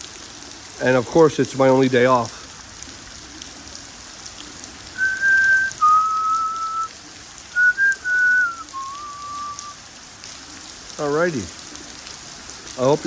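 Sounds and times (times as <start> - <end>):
falling rain: 0.0 - 13.0
person whistling a slow tune: 5.0 - 6.9, 7.5 - 9.8.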